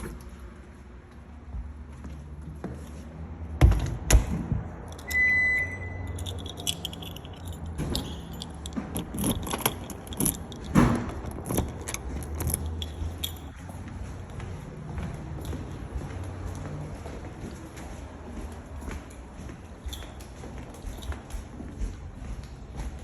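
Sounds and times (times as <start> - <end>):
metal objects jingling and clicking: 4.9 - 13.8, 19.8 - 21.6
short high beep: 5.0 - 6.2.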